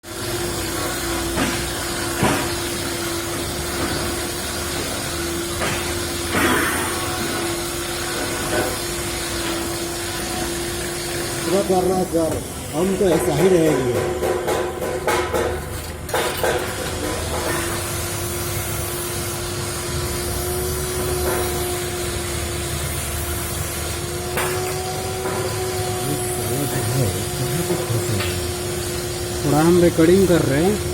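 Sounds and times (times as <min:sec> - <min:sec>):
machine hiss: 0:00.0 - 0:30.9
machine hum: 0:13.8 - 0:30.9.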